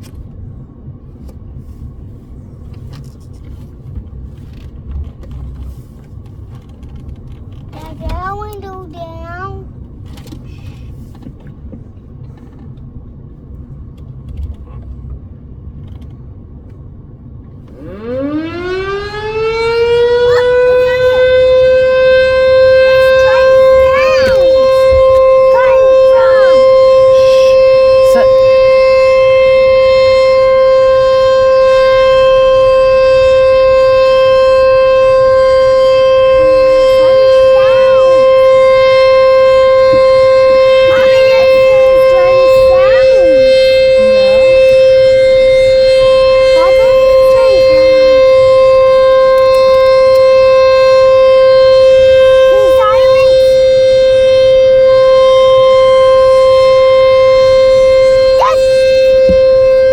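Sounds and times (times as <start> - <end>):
warning siren steady tone: 17.6 - 59.9.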